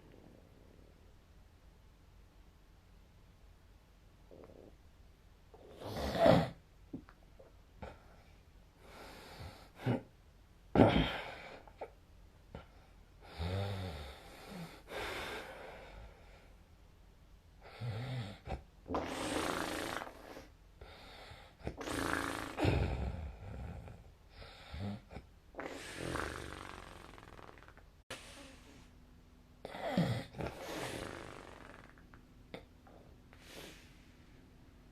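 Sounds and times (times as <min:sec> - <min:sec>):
person snoring: 0:17.7 - 0:20.5, 0:21.7 - 0:24.0, 0:24.7 - 0:28.7, 0:29.6 - 0:32.0.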